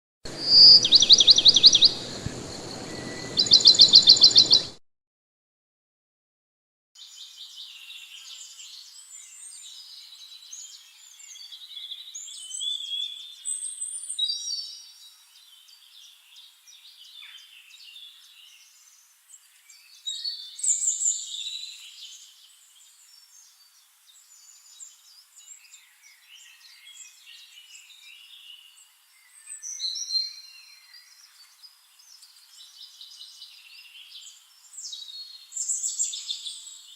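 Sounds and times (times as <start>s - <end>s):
birds chirping and singing: 0.3s - 4.8s.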